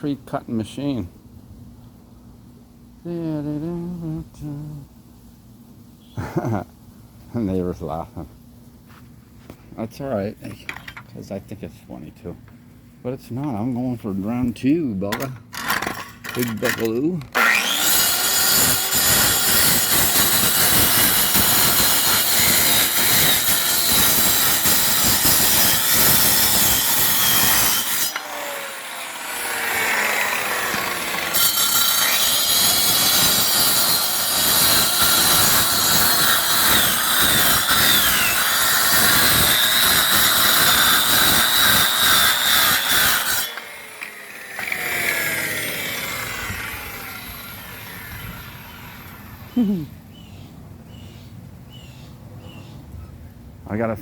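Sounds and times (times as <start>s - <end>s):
concrete saw grinding: 15.1s - 49.9s
saw blade winding down: 15.6s - 49.9s.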